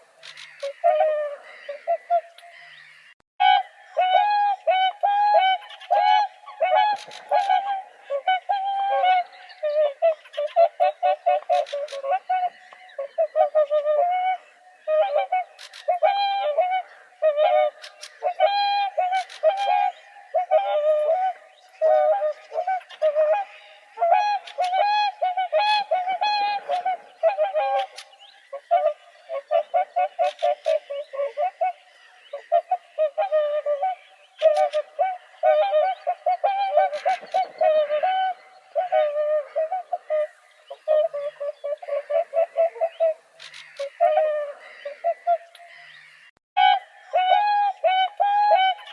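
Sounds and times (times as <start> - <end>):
swans calling: 0.0 - 48.9.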